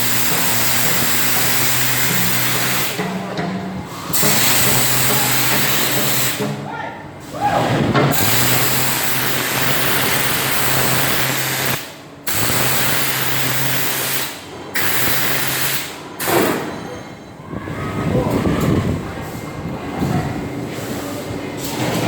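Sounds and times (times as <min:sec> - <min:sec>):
pressure washer jet hissing: 0:00.0 - 0:03.0, 0:04.1 - 0:06.4, 0:08.1 - 0:16.0.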